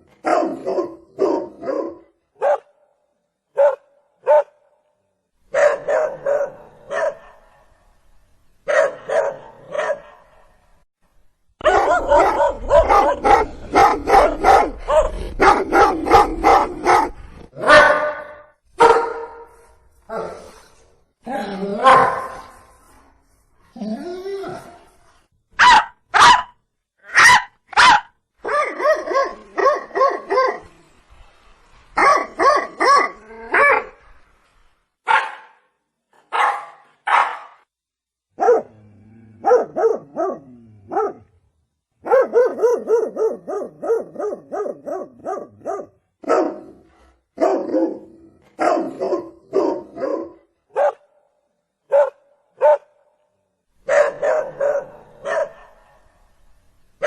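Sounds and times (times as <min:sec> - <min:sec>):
dog barking: 0:00.2 - 0:02.8, 0:03.5 - 0:04.7, 0:05.5 - 0:07.7, 0:08.7 - 0:10.5, 0:11.6 - 0:19.5, 0:21.8 - 0:22.4, 0:25.6 - 0:30.7, 0:32.0 - 0:33.9, 0:35.0 - 0:35.7, 0:36.3 - 0:37.6, 0:38.4 - 0:38.8, 0:39.4 - 0:41.3, 0:42.0 - 0:51.2, 0:51.9 - 0:53.0, 0:53.8 - 0:56.1.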